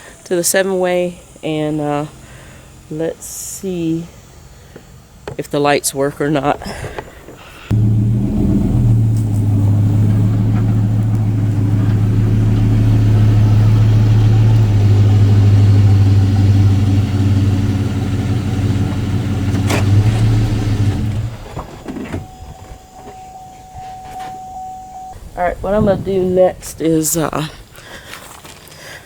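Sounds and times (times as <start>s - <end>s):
truck engine running at low revs: 7.7s - 28.0s.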